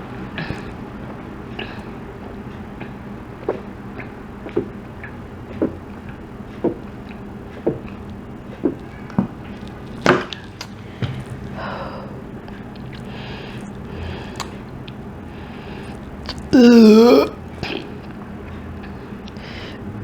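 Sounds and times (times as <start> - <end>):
person gulping soda: 3.4 - 4.9, 5.5 - 8.0, 15.9 - 17.9.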